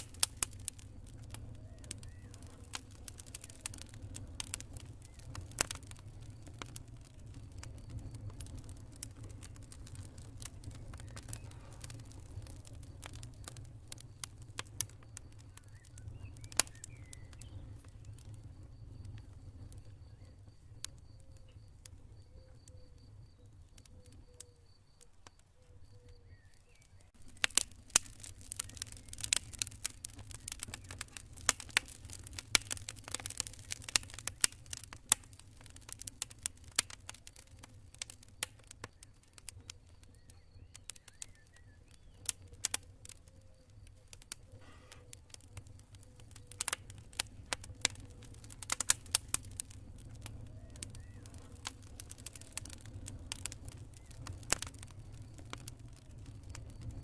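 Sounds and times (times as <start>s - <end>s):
campfire crackling and popping: 0.0s - 57.0s
low rumble of burning wood: 0.0s - 57.0s
cricket chirping: 4.8s - 57.0s.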